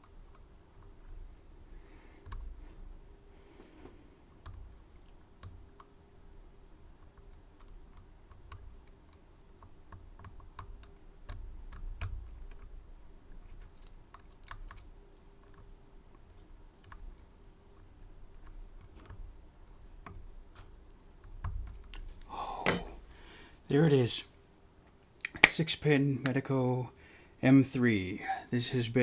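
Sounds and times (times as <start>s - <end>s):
lock pick clicking: 22.6s - 23.0s.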